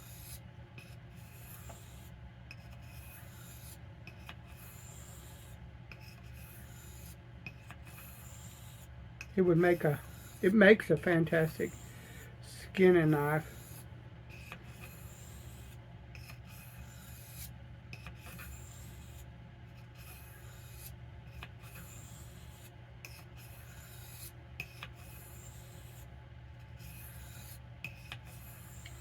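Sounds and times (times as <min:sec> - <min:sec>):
knife scraping on whetstone: 0:00.0 - 0:12.2, 0:12.8 - 0:29.0.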